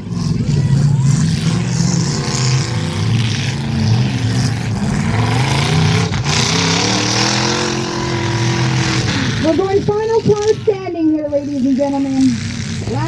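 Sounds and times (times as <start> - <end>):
car engines revving: 0.0 - 13.0.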